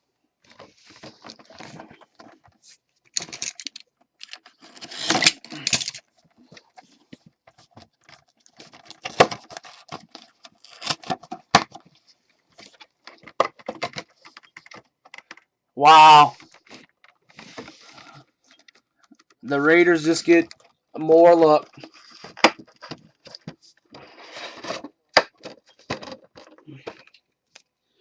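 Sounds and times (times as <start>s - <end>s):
packaging rustling and crinkling: 0.4s - 15.4s, 21.4s - 27.2s
sharp clicks and scrapes: 0.5s - 11.8s.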